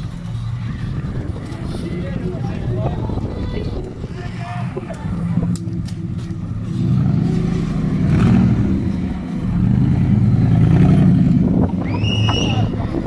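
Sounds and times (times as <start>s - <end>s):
off-road vehicle engine revving: 4.7s - 13.0s.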